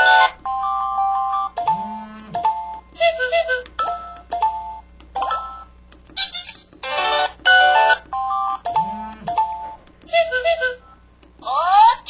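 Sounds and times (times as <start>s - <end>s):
phone ringtone beeping melody: 0.0s - 2.8s, 3.8s - 5.7s, 6.9s - 9.8s
buzzy chords: 0.0s - 11.2s.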